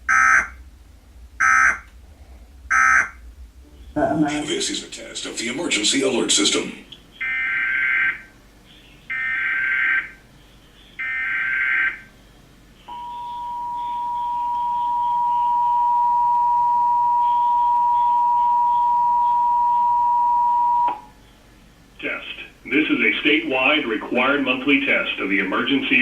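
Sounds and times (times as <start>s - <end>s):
screeching data bursts: 0.0s - 0.6s, 1.4s - 1.9s, 2.7s - 3.2s
two-tone alert signal: 12.9s - 21.0s.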